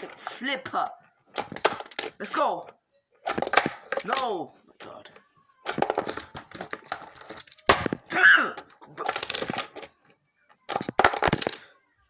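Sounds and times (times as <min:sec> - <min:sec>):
toy car clattering on hard surface: 0:05.7 - 0:10.0, 0:10.7 - 0:11.7.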